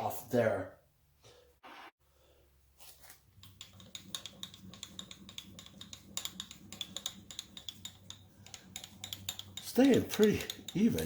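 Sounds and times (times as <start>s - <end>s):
rapid mechanical clicking: 3.4s - 11.0s.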